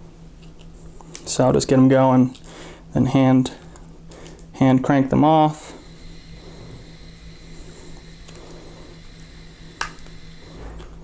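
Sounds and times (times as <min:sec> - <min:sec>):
small part clicking: 0:09.8 - 0:10.2.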